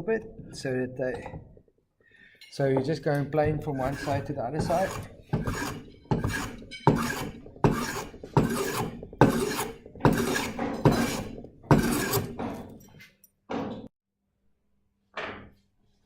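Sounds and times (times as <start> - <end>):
hand plane shaving wood: 3.7 - 12.7.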